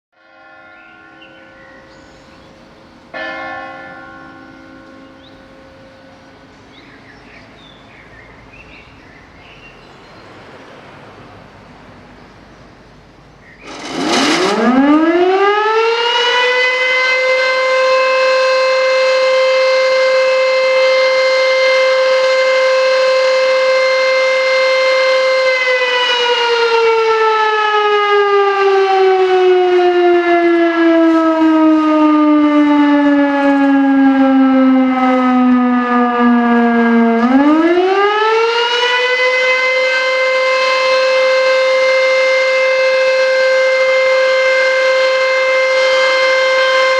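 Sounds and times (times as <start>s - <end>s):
fire siren wailing: 13.6s - 46.9s.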